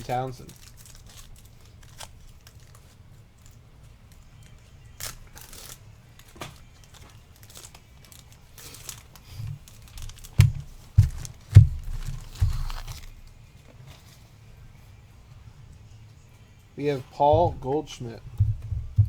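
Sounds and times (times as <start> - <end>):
foil wrapper tearing and crinkling: 0.0 - 13.4
cards tapping and knocking: 9.4 - 13.2, 17.3 - 19.0.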